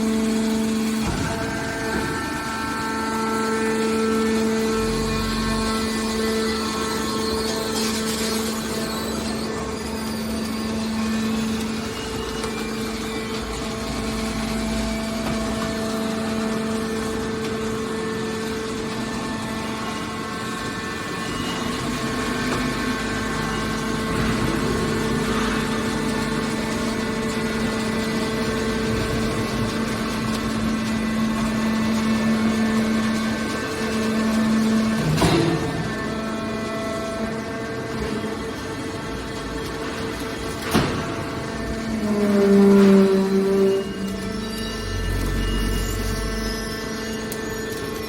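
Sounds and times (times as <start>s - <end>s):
hydraulic power unit humming: 0.0s - 48.0s.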